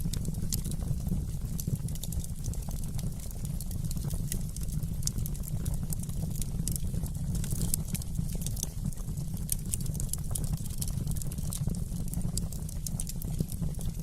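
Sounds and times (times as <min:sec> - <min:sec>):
low steady rumble: 0:00.0 - 0:04.8
wood fire crackling and popping: 0:00.0 - 0:14.0.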